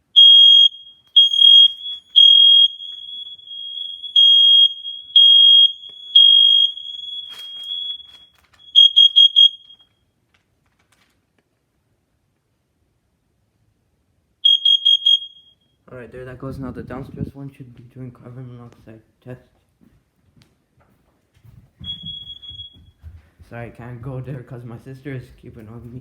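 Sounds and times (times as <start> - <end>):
high alarm beeps: 0.1 - 9.8, 14.4 - 15.6, 21.8 - 22.9.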